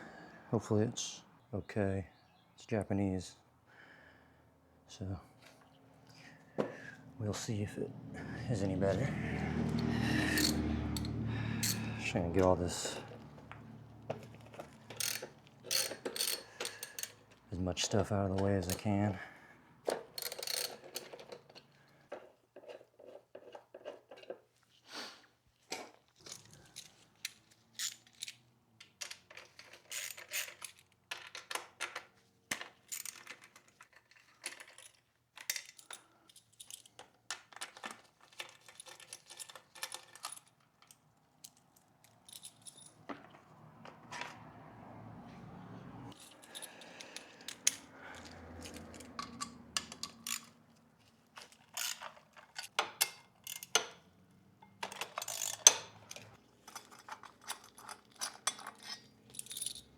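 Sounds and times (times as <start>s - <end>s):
metal tools clinking and rattling: 8.2s - 13.4s, 14.0s - 19.2s, 19.9s - 24.4s, 25.8s - 44.4s, 46.1s - 59.9s.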